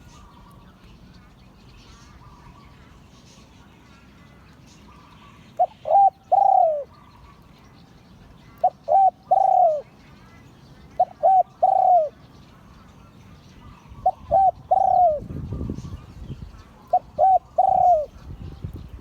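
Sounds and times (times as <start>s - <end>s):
other birds chirping: 0.0s - 19.0s
dove cooing: 4.8s - 7.6s, 8.5s - 12.3s, 13.6s - 16.0s, 16.6s - 18.4s.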